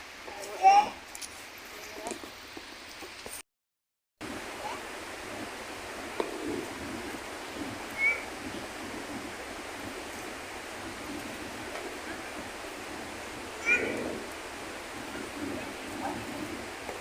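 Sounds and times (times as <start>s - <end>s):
outdoor rushing noise: 4.2s - 17.0s.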